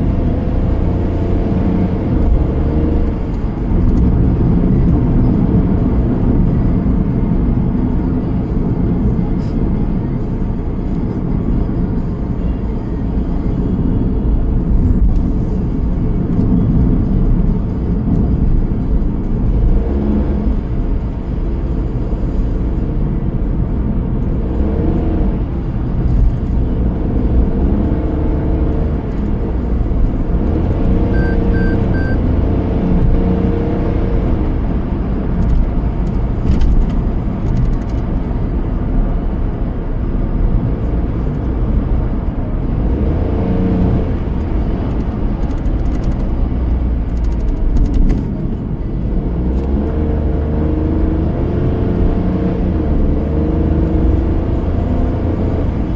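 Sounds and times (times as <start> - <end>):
car engine and tyre rumble: 0.0 - 55.9
short high beeps: 31.1 - 32.2.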